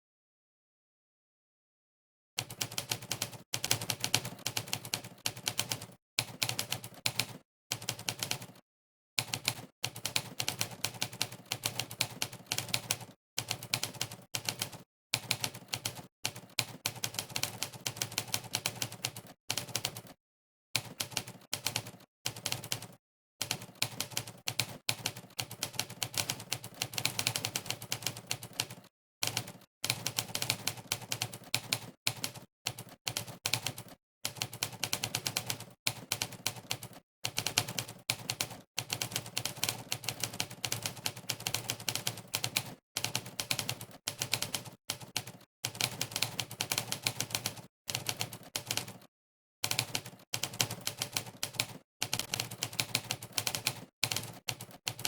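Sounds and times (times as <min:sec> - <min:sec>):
typewriter keystroke clacks: 0:20.8 - 0:55.0.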